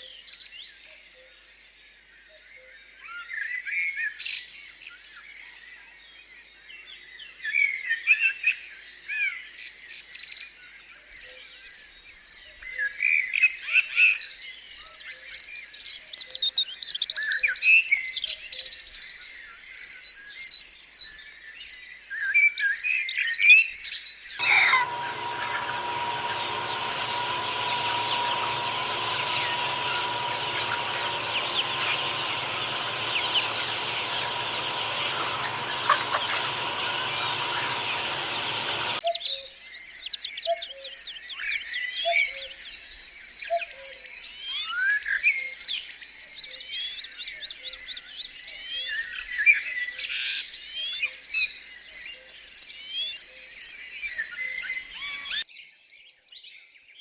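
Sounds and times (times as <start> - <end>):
birds chirping and calling: 24.4 - 39.0, 54.1 - 55.4
steady hum and hiss: 24.4 - 39.0.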